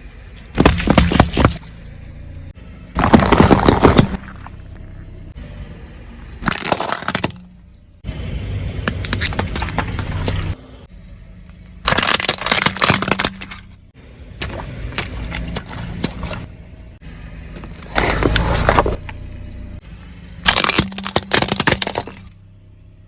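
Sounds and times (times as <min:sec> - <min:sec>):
low engine hum: 0:00.0 - 0:23.0
objects crunching under car tyres: 0:00.4 - 0:02.3, 0:02.9 - 0:05.2, 0:06.2 - 0:08.0, 0:08.8 - 0:10.6, 0:11.4 - 0:16.9, 0:17.5 - 0:19.4, 0:20.4 - 0:22.4.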